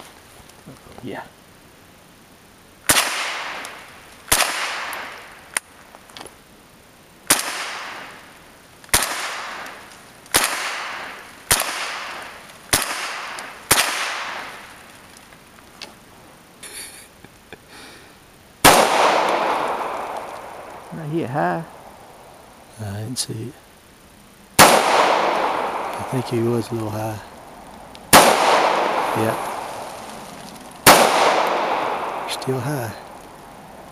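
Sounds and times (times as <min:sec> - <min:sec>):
gunshots: 0:02.9 - 0:05.4, 0:07.2 - 0:08.3, 0:08.9 - 0:14.8, 0:18.6 - 0:21.0, 0:24.6 - 0:27.2, 0:28.1 - 0:33.2.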